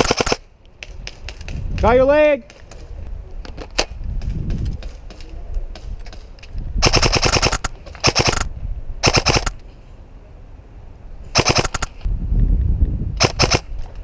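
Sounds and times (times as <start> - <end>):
airsoft rifle full-auto bursts: 0.0 - 0.4, 6.8 - 9.6, 11.4 - 12.0, 13.2 - 13.6.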